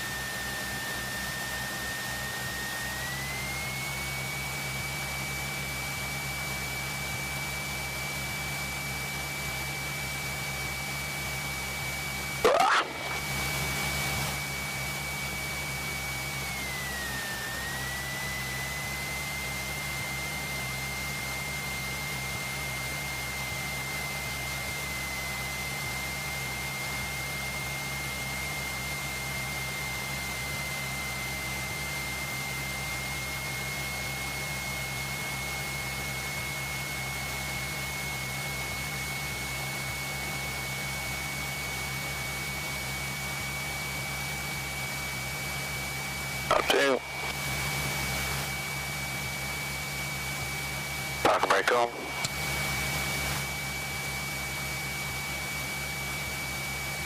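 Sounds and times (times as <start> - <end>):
light aircraft piston engine drone: 0.0 - 57.0
thin high whine: 12.4 - 14.4, 46.4 - 48.6, 51.2 - 53.5.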